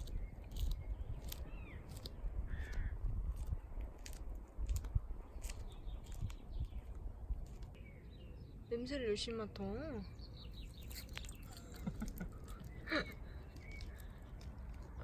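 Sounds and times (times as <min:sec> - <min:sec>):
wind rumbling on microphone: 0:00.0 - 0:08.7
bird calling: 0:10.0 - 0:14.4.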